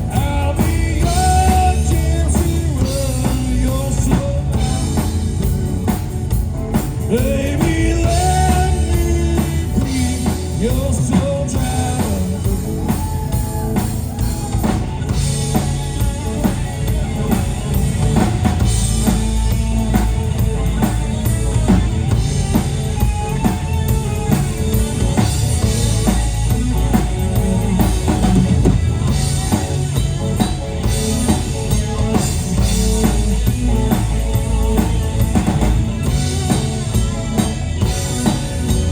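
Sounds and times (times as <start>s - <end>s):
bass line: 0.0s - 38.9s
drum kit with bass drum: 0.0s - 38.9s
gliding lead melody: 0.0s - 38.9s.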